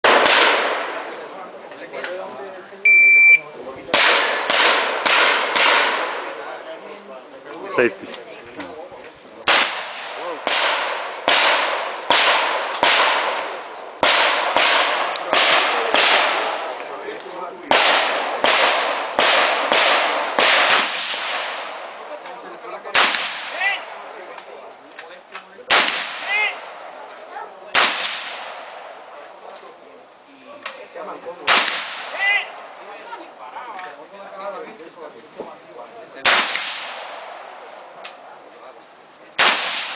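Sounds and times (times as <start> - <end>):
echoing gunshots: 0.0 - 1.4, 3.9 - 6.6, 9.5 - 16.8, 17.7 - 22.2, 22.9 - 24.2, 25.7 - 27.1, 27.7 - 29.2, 31.4 - 32.8, 36.2 - 37.8, 39.4 - 39.9
faint sharp crack: 36.3 - 37.2.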